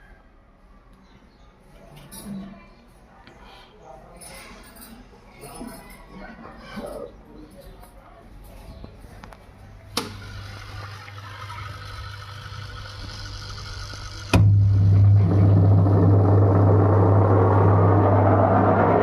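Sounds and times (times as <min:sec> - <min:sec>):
washing machine motor running noisily: 0:10.1 - 0:19.0.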